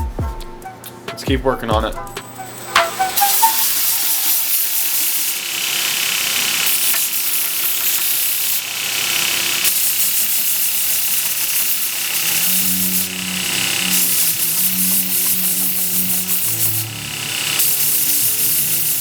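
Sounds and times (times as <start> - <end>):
belt grinder sanding: 3.2 - 19.0.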